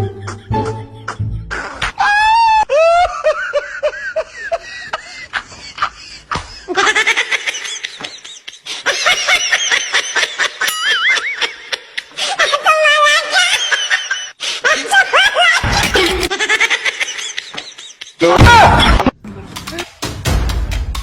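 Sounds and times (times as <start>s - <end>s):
high-pitched laughter: 0.1s - 5.9s, 8.9s - 18.2s.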